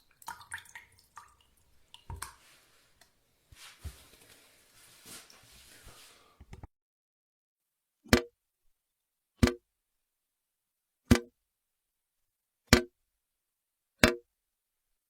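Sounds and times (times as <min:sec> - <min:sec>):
water drops dripping: 0:00.0 - 0:03.1.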